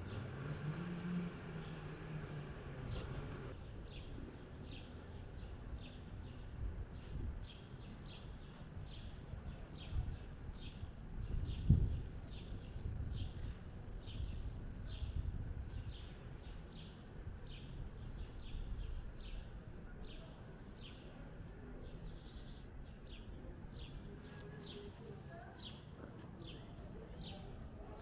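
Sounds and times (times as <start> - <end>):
small bird chirping: 22.0 - 23.2.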